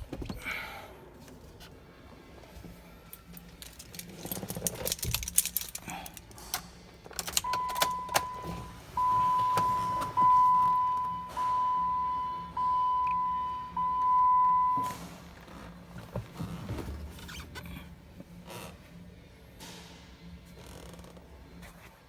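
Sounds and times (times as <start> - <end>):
electronic warning chime: 7.5 - 15.0.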